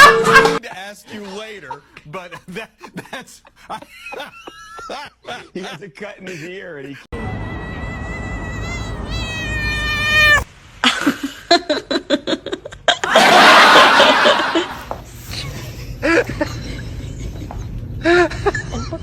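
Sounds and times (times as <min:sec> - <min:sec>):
cat yowling: 0:07.4 - 0:10.5.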